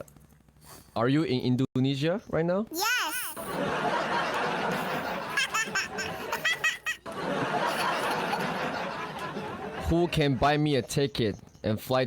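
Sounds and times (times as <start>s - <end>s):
breathy giggling: 4.5s - 9.2s.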